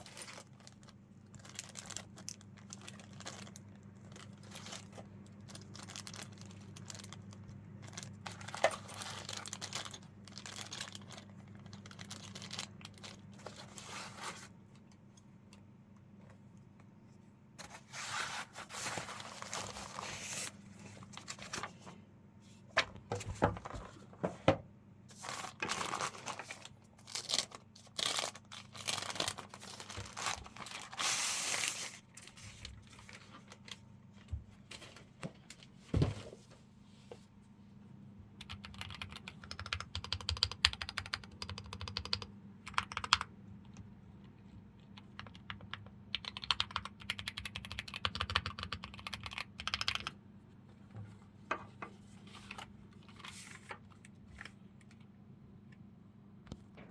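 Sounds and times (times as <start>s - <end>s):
rustling or scraping: 13.4s - 14.6s, 17.6s - 24.5s.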